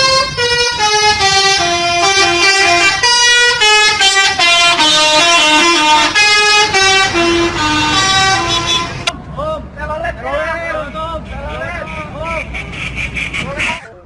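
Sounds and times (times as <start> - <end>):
musical air horn tune: 0.0 - 9.1.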